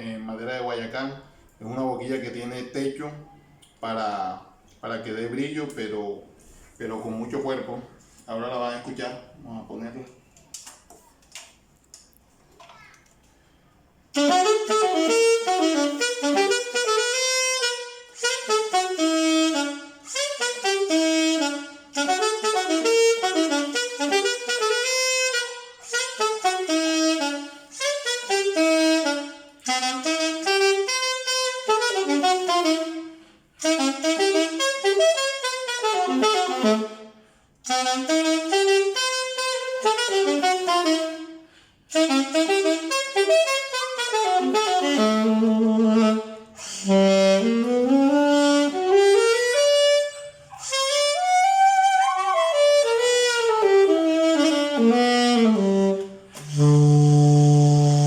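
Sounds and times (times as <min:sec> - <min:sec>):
saxophone melody: 0:14.1 - 0:58.0.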